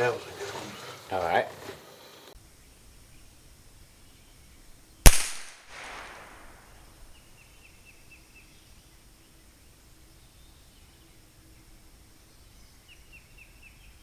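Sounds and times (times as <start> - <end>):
rifle shot: 5.1 - 6.8.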